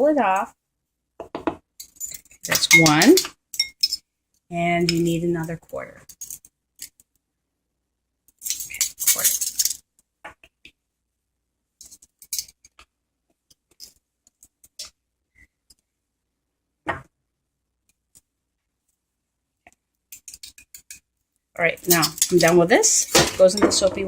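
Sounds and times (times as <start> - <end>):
metal spoons scraping and clinking: 1.8 - 4.0, 6.0 - 7.0, 8.4 - 9.8, 11.8 - 12.7, 20.1 - 21.0, 21.8 - 24.0.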